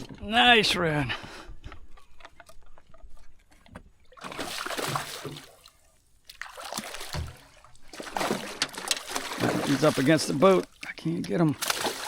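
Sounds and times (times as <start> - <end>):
fish splashing in water: 4.1 - 10.8, 11.6 - 12.0.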